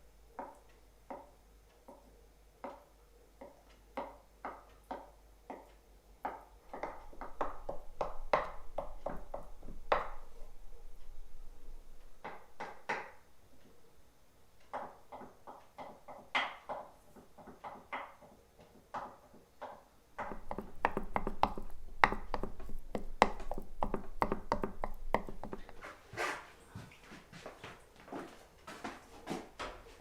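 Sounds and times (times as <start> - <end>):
kitchen knocks and taps: 6.3 - 10.2, 18.9 - 25.9
low steady hum: 6.8 - 12.6, 20.1 - 27.2.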